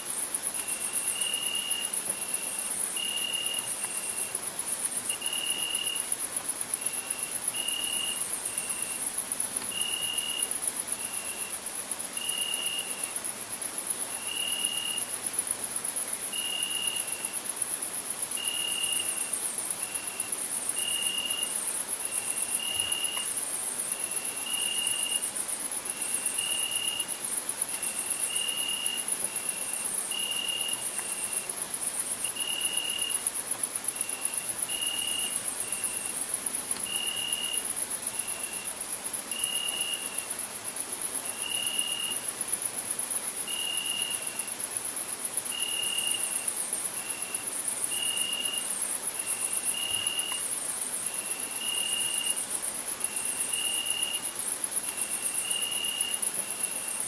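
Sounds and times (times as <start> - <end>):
cricket trilling song: 0.0 - 57.0
crickets chorus: 0.0 - 57.0.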